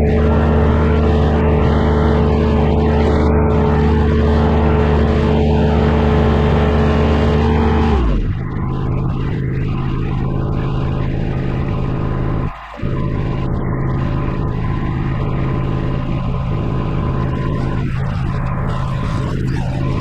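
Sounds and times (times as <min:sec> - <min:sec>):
machinery engine at high revs: 0:00.0 - 0:13.0.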